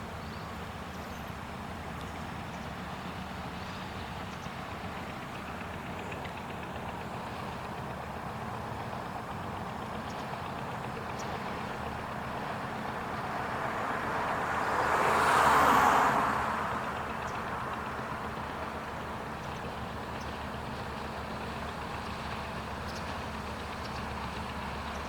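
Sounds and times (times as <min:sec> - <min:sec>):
steady engine drone: 0:00.0 - 0:25.0
vehicle passing close by: 0:11.2 - 0:20.2.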